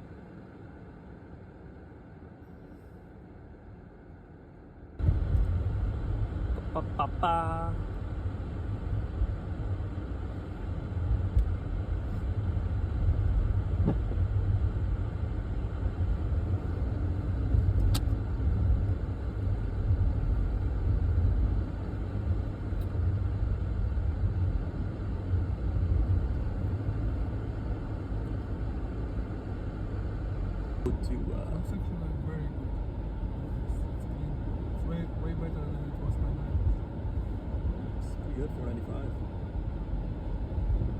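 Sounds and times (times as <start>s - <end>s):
car engine and road noise: 0.0s - 40.9s
sharp click: 17.8s - 18.2s.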